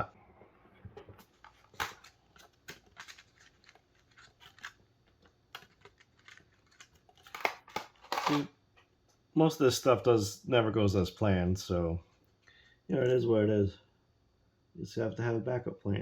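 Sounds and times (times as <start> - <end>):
small hand tools clicking and scraping: 2.4 - 4.8, 5.5 - 8.5.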